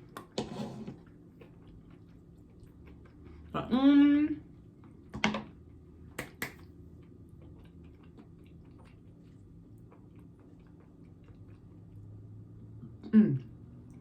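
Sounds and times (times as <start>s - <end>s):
chewing with wet mouth clicks: 1.1s - 3.5s, 6.1s - 12.2s.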